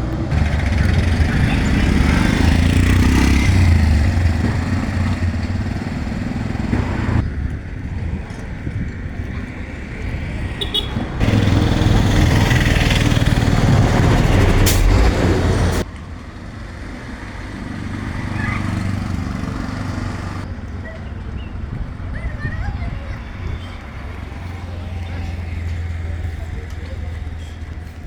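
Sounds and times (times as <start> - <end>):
steady mechanical noise: 11.2 - 15.9.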